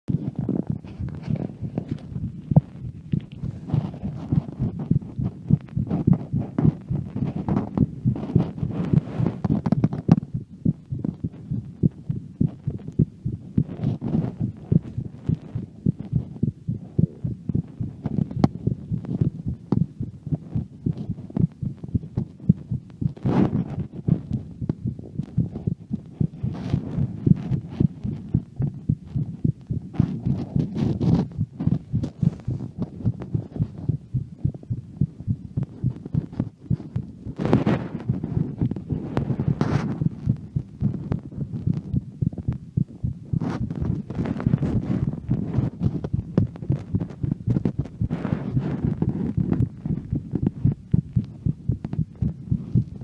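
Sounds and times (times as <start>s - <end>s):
heartbeat thumps: 0.1s - 53.0s
rubbing and rustling: 0.1s - 53.0s.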